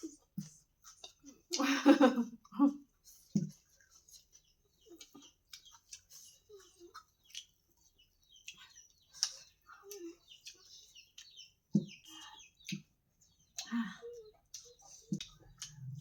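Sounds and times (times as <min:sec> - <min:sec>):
wet mouth smacks and chewing: 0:03.2 - 0:13.7, 0:14.4 - 0:16.0.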